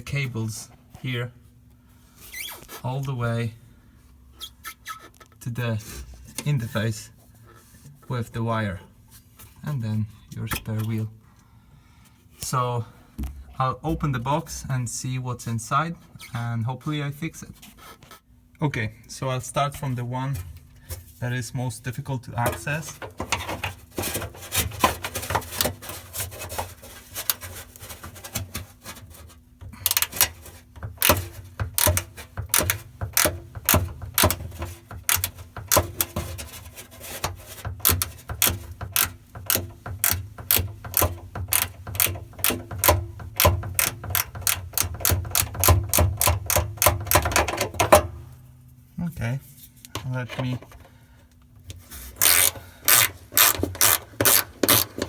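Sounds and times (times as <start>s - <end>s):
ratchet wrench clicking: 29.8s - 30.3s, 31.0s - 36.1s, 37.8s - 47.4s, 52.2s - 55.0s.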